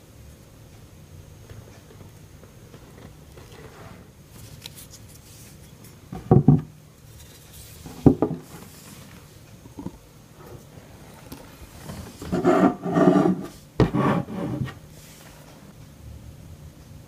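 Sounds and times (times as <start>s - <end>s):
knocks on a tabletop: 6.2s - 6.7s
light rubbing: 10.4s - 15.6s.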